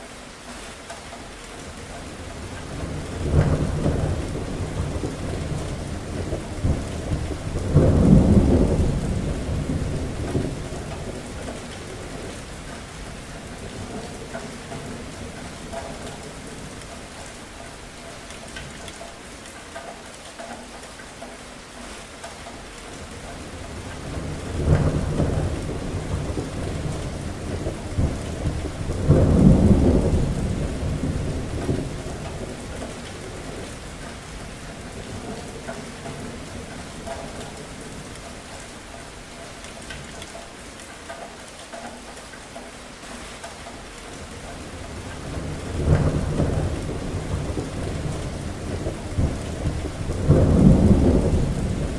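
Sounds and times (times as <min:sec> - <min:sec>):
steady rain: 0:00.0 - 0:51.9
thunder rumbling: 0:02.3 - 0:16.9, 0:23.5 - 0:38.5, 0:44.6 - 0:51.9.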